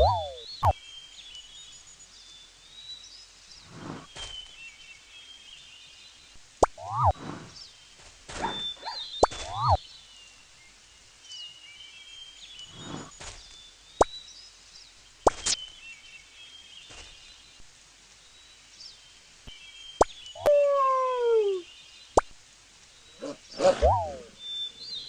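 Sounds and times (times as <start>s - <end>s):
faint bird chirping: 0.0s - 25.0s
sharp pops: 6.6s - 7.0s, 15.3s - 15.7s.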